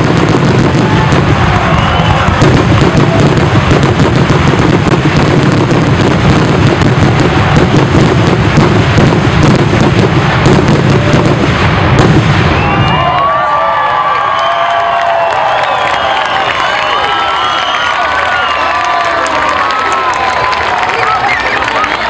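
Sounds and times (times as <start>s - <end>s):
fireworks whistles: 0.0s - 13.3s, 15.6s - 18.6s
fireworks bursts and booms: 0.0s - 13.4s
crowd cheering: 0.0s - 22.0s.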